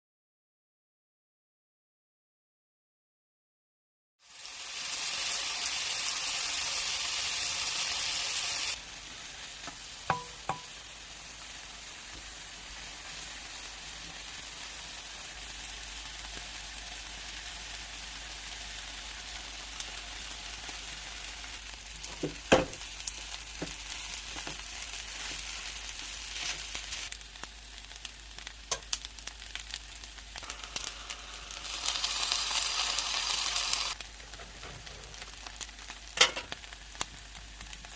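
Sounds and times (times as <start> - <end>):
rice sizzling in a pan: 4.2 - 37.9
utensil knocking on pan: 10.1 - 10.7, 22.2 - 22.8.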